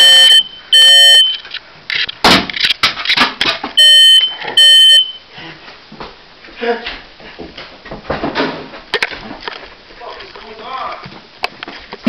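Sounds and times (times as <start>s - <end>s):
smoke alarm beeps: 0.0s - 1.4s, 3.8s - 5.2s.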